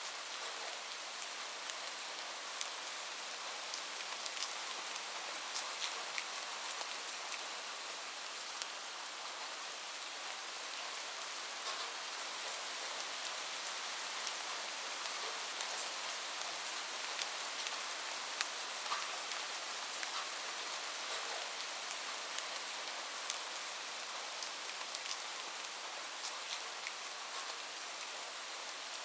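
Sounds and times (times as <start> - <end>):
rain falling on a roof: 0.0 - 29.0.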